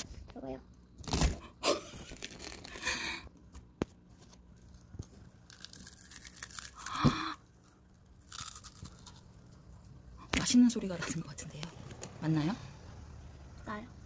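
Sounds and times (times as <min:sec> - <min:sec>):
child crunching fried food: 0:01.1 - 0:03.1, 0:04.6 - 0:09.7.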